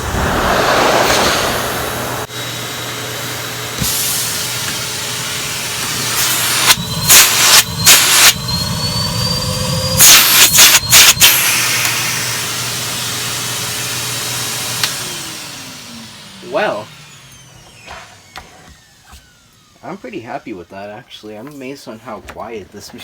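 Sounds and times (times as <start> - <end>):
rushes of air on carpet: 0.0 - 2.3
vacuum cleaner motor whining: 0.0 - 23.0.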